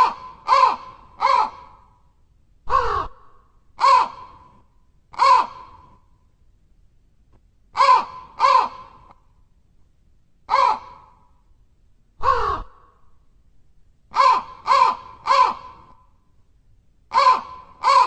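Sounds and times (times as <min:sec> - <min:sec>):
crow cawing: 0:00.0 - 0:02.0, 0:02.7 - 0:04.6, 0:05.2 - 0:05.9, 0:07.8 - 0:09.2, 0:10.5 - 0:11.3, 0:12.2 - 0:13.0, 0:14.1 - 0:16.0, 0:17.1 - 0:18.0.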